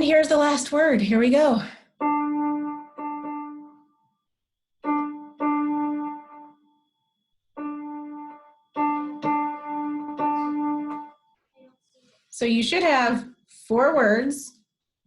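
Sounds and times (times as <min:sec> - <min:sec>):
electronic keyboard morse code tones: 0:02.0 - 0:03.8, 0:07.6 - 0:11.3.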